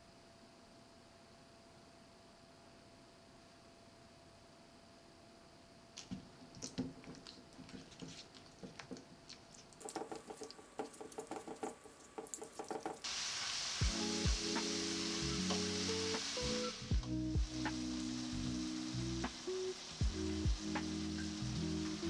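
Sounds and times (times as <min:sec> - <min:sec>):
utensils clicking and tapping: 0:06.6 - 0:13.0
food sizzling in a pan: 0:09.8 - 0:22.0.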